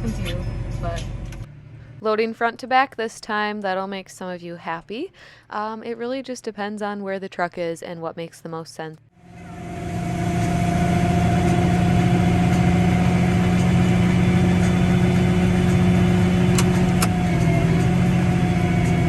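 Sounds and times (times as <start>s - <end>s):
tractor engine running: 0.0s - 2.0s, 9.2s - 19.0s.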